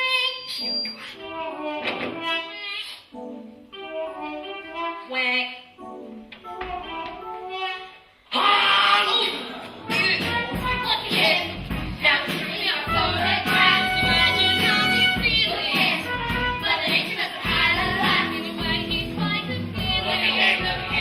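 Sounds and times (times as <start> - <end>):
instrumental accompaniment: 0.7 - 8.2, 9.7 - 21.0
young voices singing: 8.3 - 21.0.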